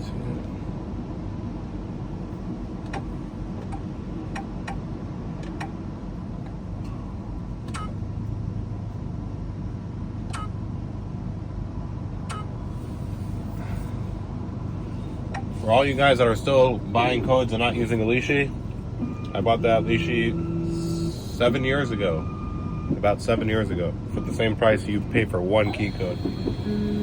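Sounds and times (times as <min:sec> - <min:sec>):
key-cutting machine humming: 0:25.6 - 0:27.0.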